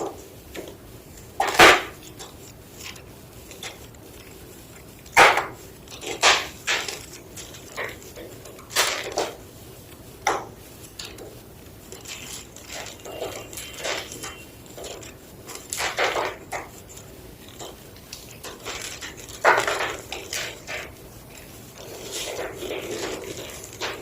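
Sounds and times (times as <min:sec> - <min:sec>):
chalk crunching and snapping: 0:00.0 - 0:24.0.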